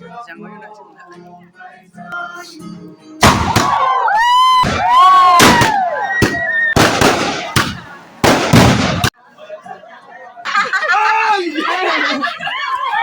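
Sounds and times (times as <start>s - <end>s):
firecrackers banging and crackling: 4.6s - 9.1s
whistling fireworks: 4.6s - 9.1s.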